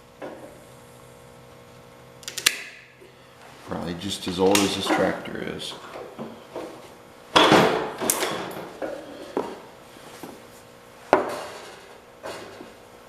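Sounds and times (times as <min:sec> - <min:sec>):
tools knocking and clattering: 0:04.5 - 0:09.6, 0:11.1 - 0:12.8.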